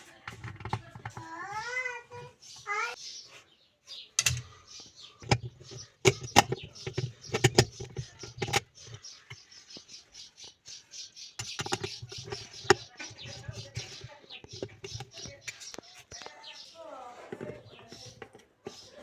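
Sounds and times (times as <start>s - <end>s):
hand tools knocking and clicking: 0.2s - 1.7s, 4.2s - 10.7s, 11.4s - 16.3s, 17.3s - 19.0s.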